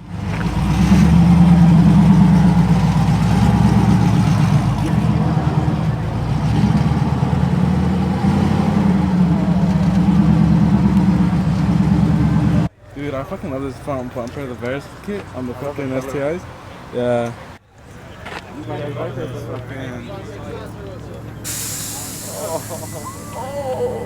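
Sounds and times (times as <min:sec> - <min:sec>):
car engine exhaust rumble: 0:00.0 - 0:12.7, 0:21.0 - 0:24.0.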